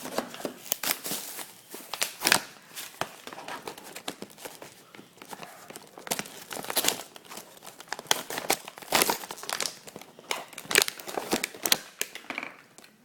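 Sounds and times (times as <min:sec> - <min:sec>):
plastic packaging crinkling and tearing: 0:00.0 - 0:12.2.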